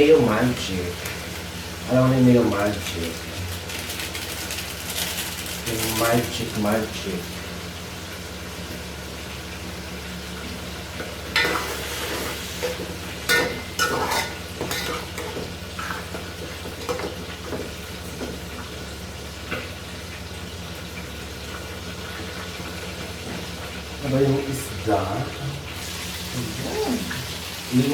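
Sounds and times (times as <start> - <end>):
metal utensil scraping cooking pot: 11.4 - 16.1.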